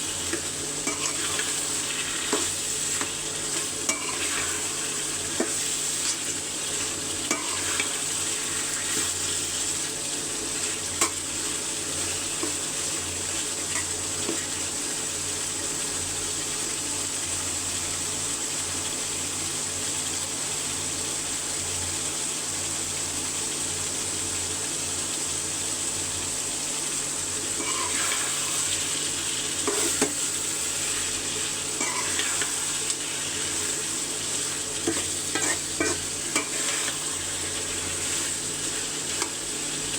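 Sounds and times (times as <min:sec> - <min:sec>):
curry sizzling in oil: 0:00.0 - 0:39.9
spoon scraping pot: 0:00.3 - 0:05.6, 0:27.6 - 0:28.6, 0:29.6 - 0:30.2, 0:31.8 - 0:33.6, 0:34.8 - 0:38.4.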